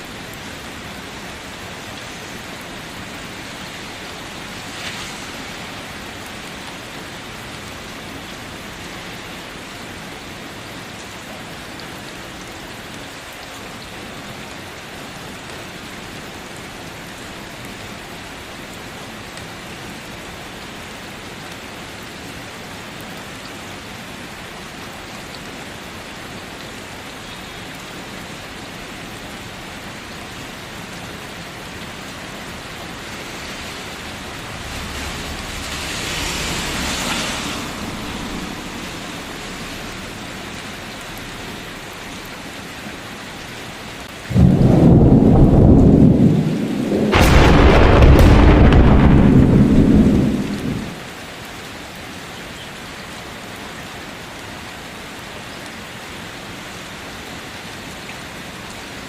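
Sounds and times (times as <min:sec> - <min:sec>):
steady rain: 0:00.0 - 0:59.0
thunder rumbling: 0:32.9 - 0:40.4, 0:44.3 - 0:51.0
loud thunderclap: 0:44.3 - 0:51.0.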